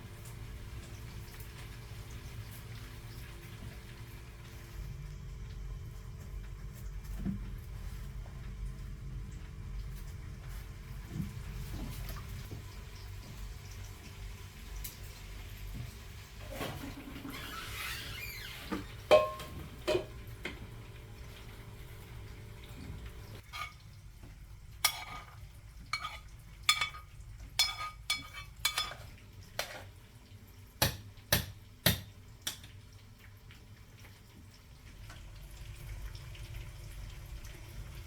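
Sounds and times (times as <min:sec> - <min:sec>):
utensil clinking against pots: 0:19.1 - 0:20.2, 0:24.8 - 0:29.9.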